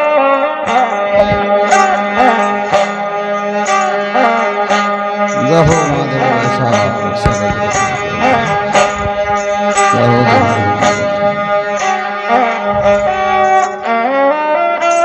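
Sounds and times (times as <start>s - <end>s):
bowed string melody: 0.6s - 15.0s
sharp percussive strike: 5.4s - 13.8s.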